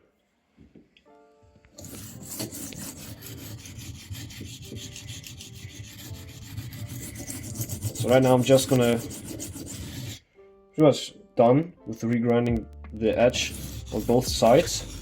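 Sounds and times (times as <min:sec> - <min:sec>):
knife blade scraping on whetstone: 0:01.8 - 0:10.2, 0:13.3 - 0:15.0.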